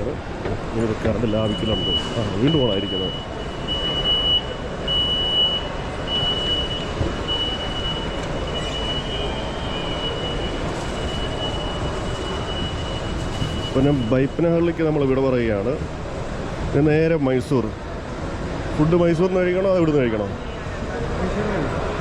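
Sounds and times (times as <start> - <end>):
rumbling background noise: 0.0 - 22.0
high electronic beeps: 1.4 - 14.5.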